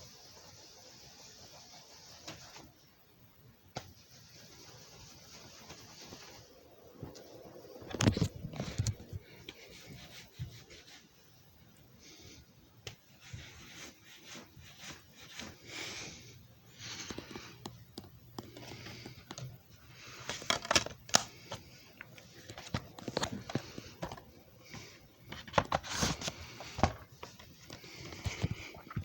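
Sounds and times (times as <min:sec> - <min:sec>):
rubbing and scraping: 0:07.8 - 0:12.4, 0:13.0 - 0:17.7, 0:18.4 - 0:29.0.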